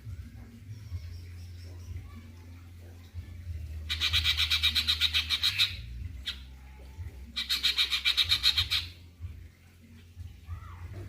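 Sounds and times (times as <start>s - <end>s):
songbird trilling: 3.9s - 6.5s, 7.4s - 9.0s.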